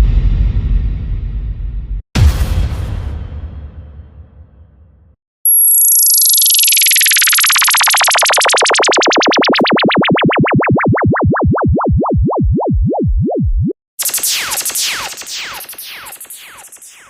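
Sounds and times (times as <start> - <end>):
electronic tone sweeping in pitch: 5.5 - 17.0.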